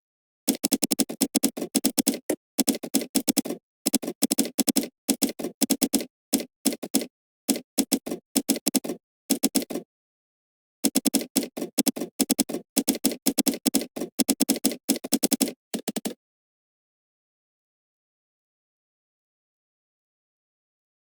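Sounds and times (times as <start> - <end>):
computer keyboard typing: 0.5 - 9.8, 10.8 - 16.2.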